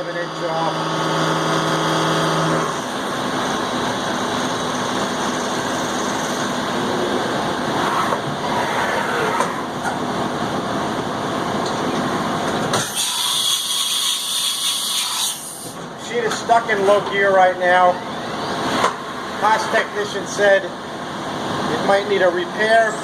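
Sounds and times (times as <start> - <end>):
milling spindle whine: 0.0 - 9.4
loud rough grinding cut: 0.1 - 3.7.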